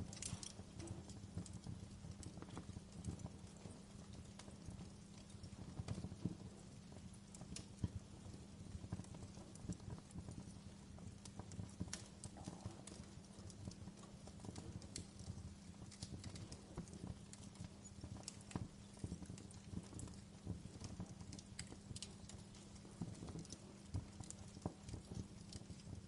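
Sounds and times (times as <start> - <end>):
campfire crackling and popping: 0.0 - 26.0.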